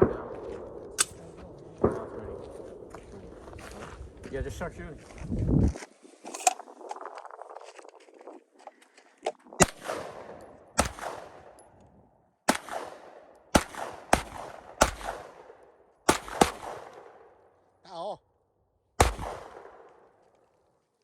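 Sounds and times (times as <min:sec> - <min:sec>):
echoing gunshots: 0:00.0 - 0:04.2, 0:09.6 - 0:11.8, 0:12.4 - 0:17.7, 0:19.0 - 0:20.4.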